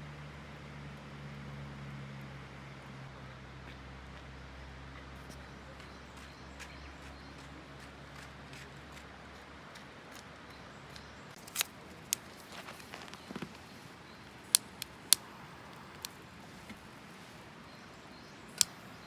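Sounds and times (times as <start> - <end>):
campfire crackling: 11.3 - 17.5.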